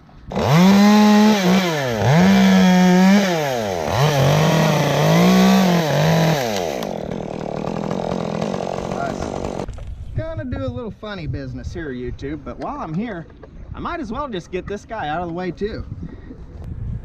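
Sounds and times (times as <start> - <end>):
chainsaw cutting wood: 0.3 - 9.8.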